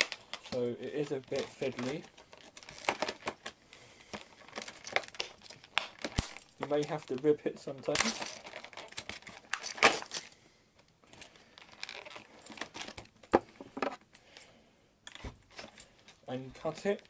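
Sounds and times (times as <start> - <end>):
packaging crinkling and tearing: 0.0 - 10.4, 11.0 - 13.3.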